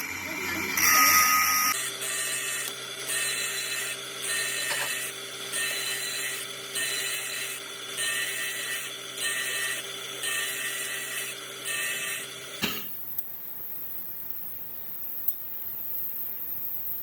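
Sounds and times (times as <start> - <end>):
machine hum: 0.0 - 12.9
tool scraping metal: 0.6 - 12.9.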